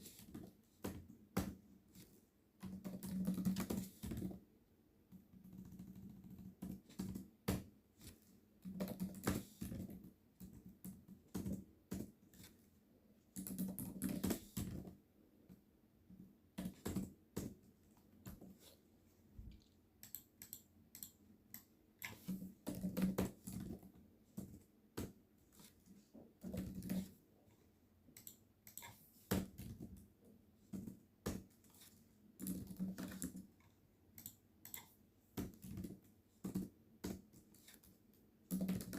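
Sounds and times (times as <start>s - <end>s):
computer keyboard typing: 2.6s - 4.4s, 5.4s - 7.3s, 8.6s - 11.6s, 13.4s - 14.4s, 20.0s - 23.9s, 32.4s - 33.5s.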